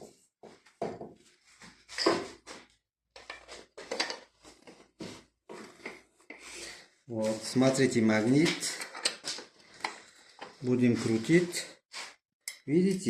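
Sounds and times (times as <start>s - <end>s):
clicks and rattles of parts handled: 3.2s - 4.3s, 8.4s - 10.6s.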